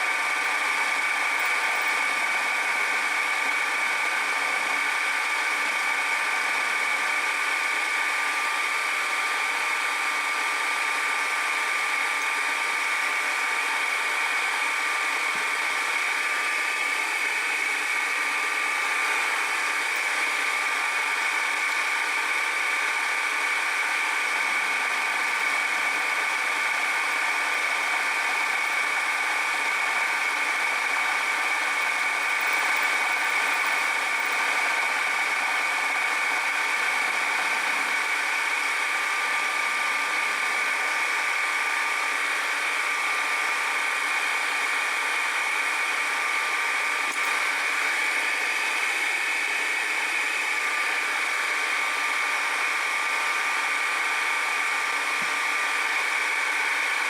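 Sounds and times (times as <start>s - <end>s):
electric motor whining: 0.0s - 42.4s.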